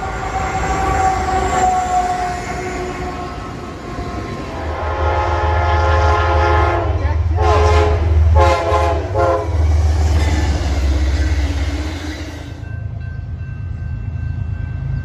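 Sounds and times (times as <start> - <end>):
locomotive air horn blasts: 4.6 - 9.7.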